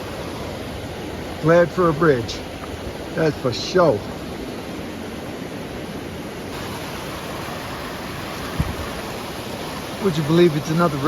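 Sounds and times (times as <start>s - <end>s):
mountain river rushing: 0.0s - 11.0s
soft low thump: 8.5s - 8.9s.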